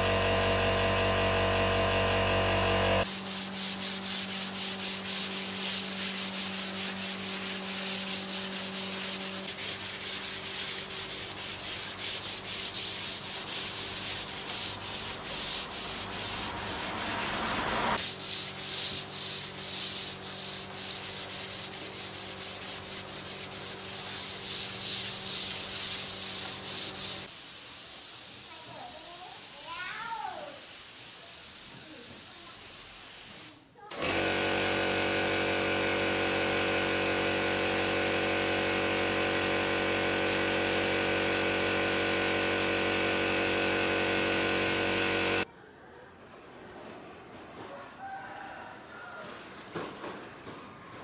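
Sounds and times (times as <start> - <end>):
wood being sanded: 0.0 - 27.3, 34.0 - 45.4.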